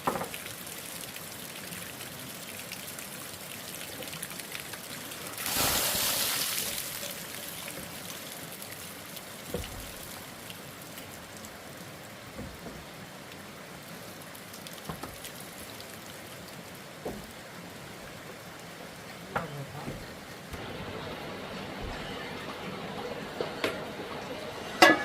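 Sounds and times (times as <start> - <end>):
steady hiss: 4.9 - 14.6, 16.6 - 25.0.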